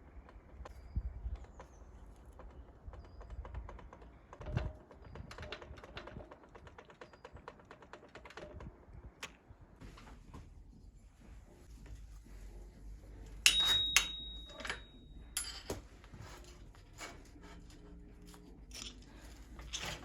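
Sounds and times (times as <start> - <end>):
metal bicycle parts clicking: 13.4 - 15.9, 18.3 - 20.0.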